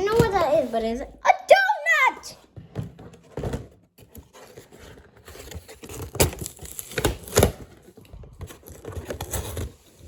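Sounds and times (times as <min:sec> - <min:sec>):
packaging crinkling and tearing: 0:04.4 - 0:10.0.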